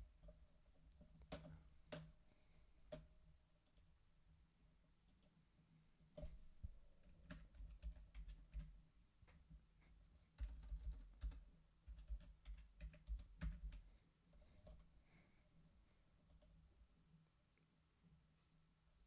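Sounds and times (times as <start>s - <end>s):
typing on computer keyboard: 1.1s - 2.2s, 7.0s - 9.4s, 10.4s - 13.8s.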